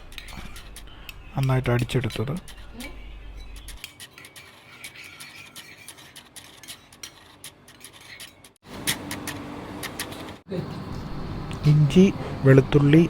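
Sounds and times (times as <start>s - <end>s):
utensils scraping a dish: 0.0s - 9.0s.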